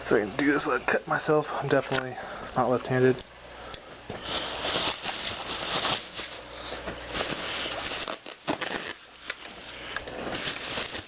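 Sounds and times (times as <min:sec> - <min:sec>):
packaging rustling and crinkling: 0:04.2 - 0:09.6, 0:10.2 - 0:11.0.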